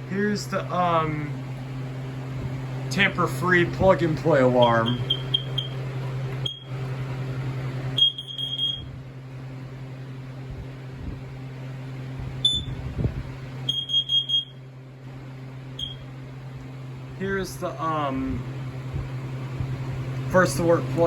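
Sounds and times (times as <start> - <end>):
high-pitched electronic alarm beeps: 4.8 - 5.8, 6.4 - 6.7, 8.0 - 8.9, 12.4 - 12.8, 13.7 - 14.6, 15.8 - 16.0.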